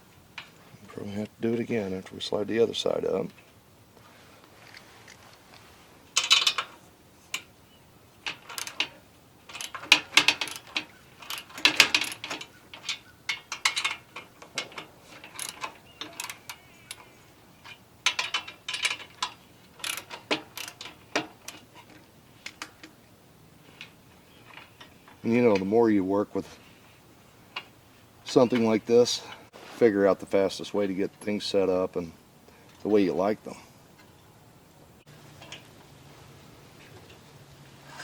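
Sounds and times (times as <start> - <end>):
metal clicking and clanking: 6.1 - 7.5, 8.2 - 23.0, 35.3 - 35.9.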